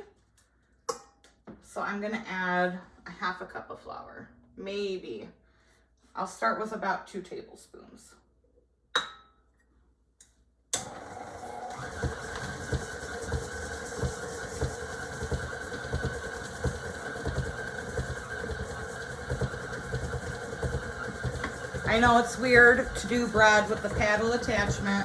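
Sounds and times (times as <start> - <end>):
light knocking in mixer: 10.8 - 25.0
stand mixer motor humming: 10.8 - 25.0.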